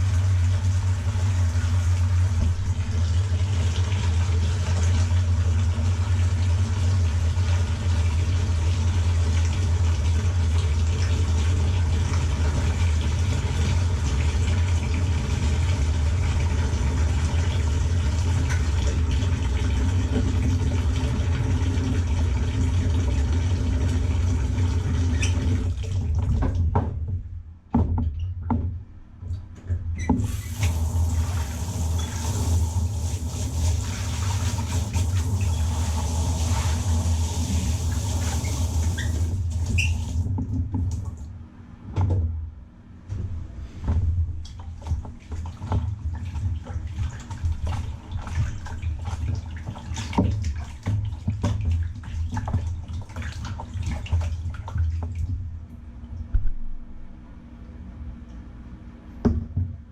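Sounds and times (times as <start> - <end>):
water running and splashing: 30.2 - 41.2, 44.6 - 55.3
wet squishes and drips: 44.4 - 55.4
steady low hum: 50.4 - 59.9.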